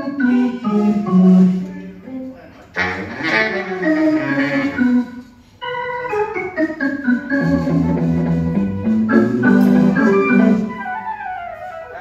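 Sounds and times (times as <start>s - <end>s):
keyboard chords and runs: 5.8s - 10.7s.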